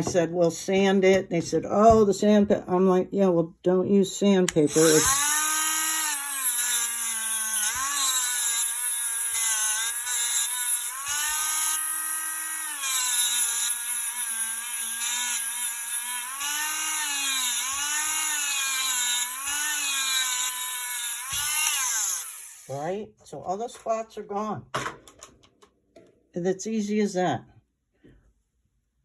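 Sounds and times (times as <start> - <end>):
rotary tool whining against metal: 4.6 - 22.7.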